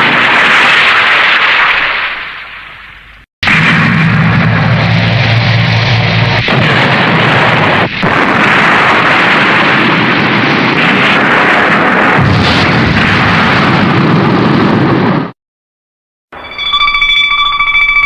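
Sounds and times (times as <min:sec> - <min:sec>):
explosion rush: 0:00.0 - 0:15.4
low hum: 0:03.1 - 0:08.2.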